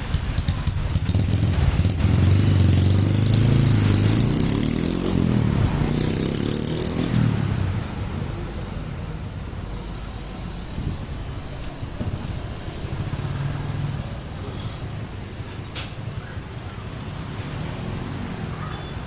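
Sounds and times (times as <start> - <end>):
motorcycle engine revving: 0.0 - 8.8.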